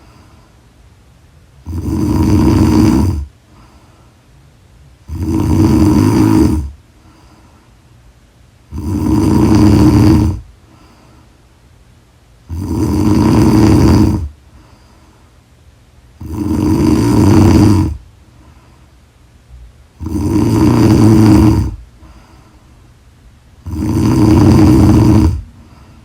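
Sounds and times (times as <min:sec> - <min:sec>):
quiet breathing: 0:00.0 - 0:00.9, 0:01.5 - 0:26.0
woman snoring loudly: 0:01.6 - 0:03.3, 0:05.0 - 0:06.8, 0:08.7 - 0:10.5, 0:12.5 - 0:14.3, 0:16.2 - 0:18.0, 0:20.0 - 0:21.8, 0:23.6 - 0:25.5.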